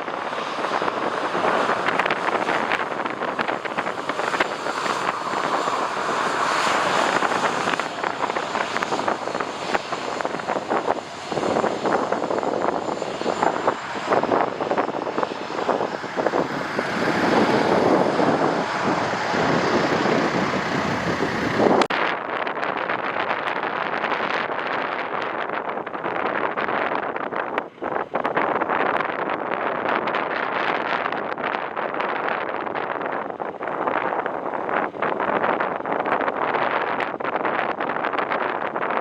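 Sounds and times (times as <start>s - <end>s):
jet engines roaring: 0.0s - 21.9s
wind buffeting microphone: 0.0s - 39.0s.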